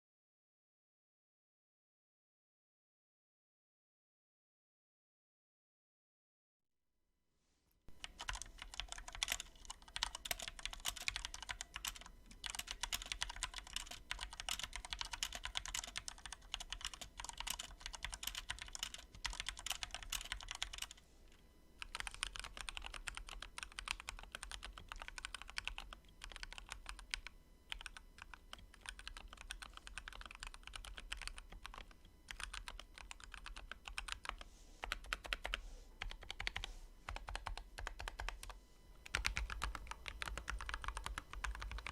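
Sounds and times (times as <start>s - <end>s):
mechanical keyboard typing: 7.9s - 21.0s, 21.8s - 41.9s.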